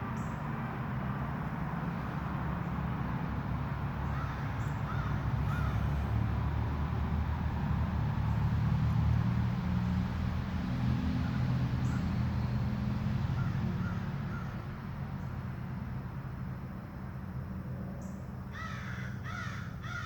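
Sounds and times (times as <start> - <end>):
road traffic rumble: 0.0 - 20.0
vehicle engine hum: 0.0 - 20.0.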